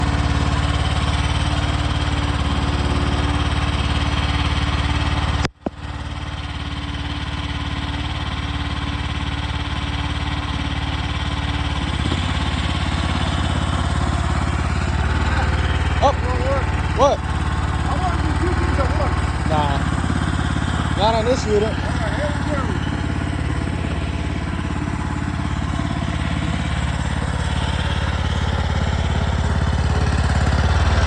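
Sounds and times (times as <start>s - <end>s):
small engine idling: 0.0s - 31.0s.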